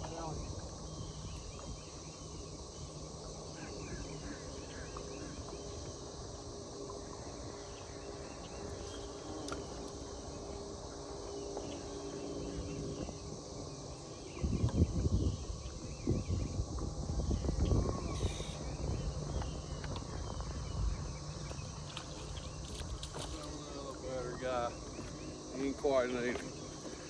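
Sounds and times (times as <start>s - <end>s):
faint low hum: 0.0s - 27.0s
insects droning: 0.0s - 27.0s
bird chirps: 18.0s - 19.7s.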